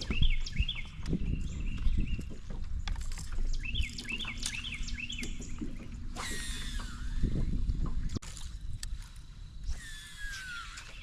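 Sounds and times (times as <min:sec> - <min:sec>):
fishing reel spool whirring: 0:03.2 - 0:11.0.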